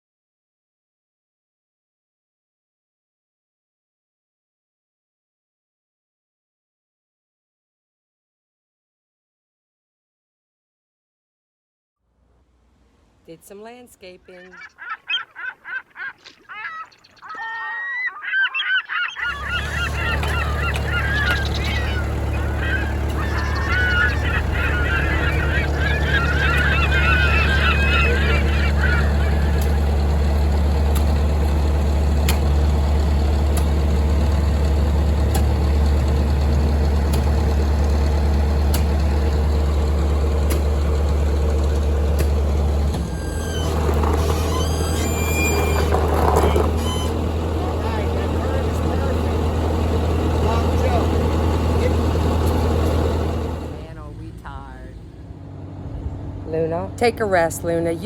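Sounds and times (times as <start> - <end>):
birds calling: 14.1 - 54.1
heavy equipment engine running: 19.0 - 58.0
steady low rumble: 47.4 - 58.0.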